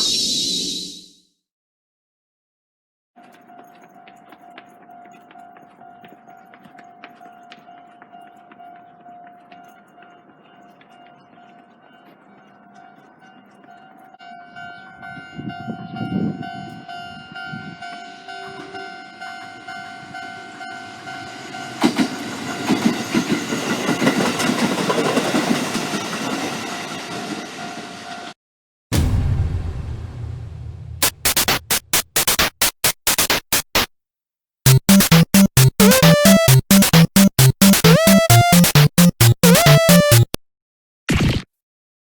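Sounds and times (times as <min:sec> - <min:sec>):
level-crossing warning bell ringing: 0:03.2 - 0:28.3
train passing: 0:03.3 - 0:28.3
wheels clattering over rail joints: 0:21.7 - 0:26.7.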